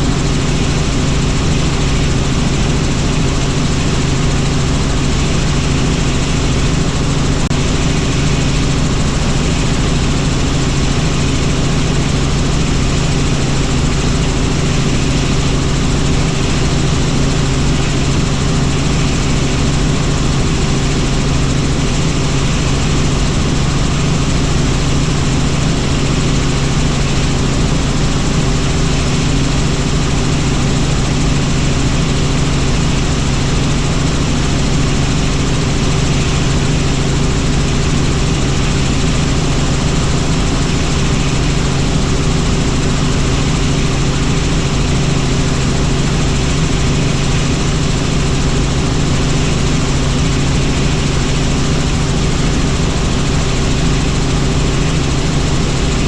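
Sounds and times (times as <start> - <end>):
helicopter rotor and engine: 0.0 - 56.0.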